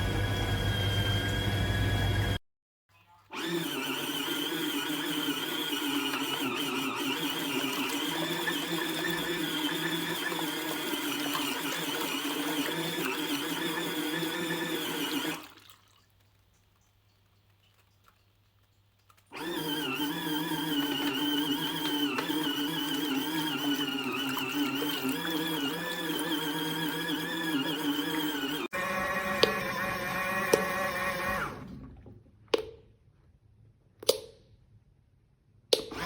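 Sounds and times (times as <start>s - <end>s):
water churning: 5.4s - 32.2s
small electric motor whining: 19.4s - 31.5s.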